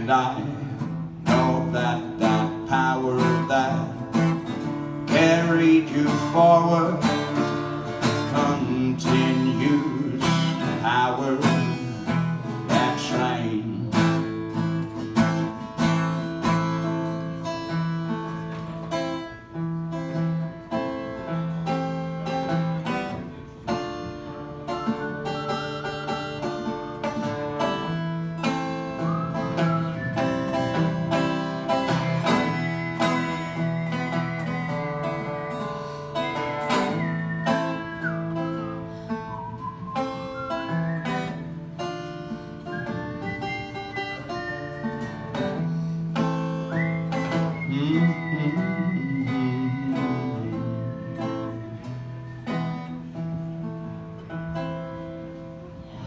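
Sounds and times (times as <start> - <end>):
acoustic guitar picking: 0.0 - 56.0.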